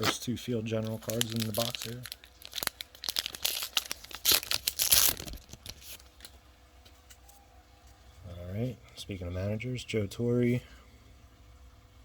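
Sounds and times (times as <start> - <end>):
foil wrapper tearing and crinkling: 0.0 - 6.4.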